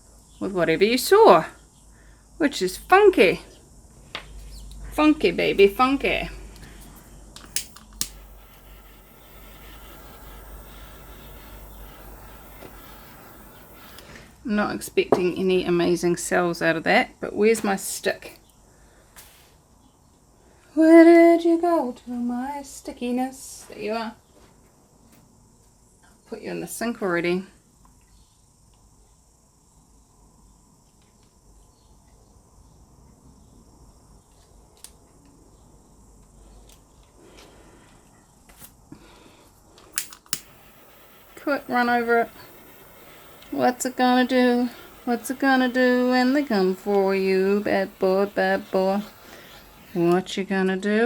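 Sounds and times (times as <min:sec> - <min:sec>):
faint steady hiss: 0:00.0 - 0:51.0
small clicks: 0:07.4 - 0:14.1, 0:40.0 - 0:50.2
low hum: 0:07.5 - 0:14.0.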